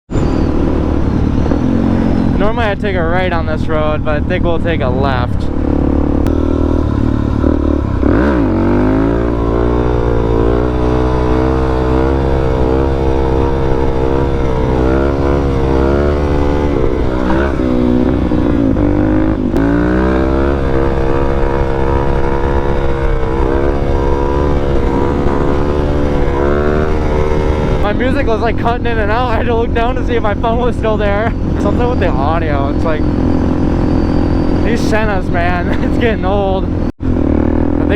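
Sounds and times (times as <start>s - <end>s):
motorcycle engine running: 0.2s - 37.9s.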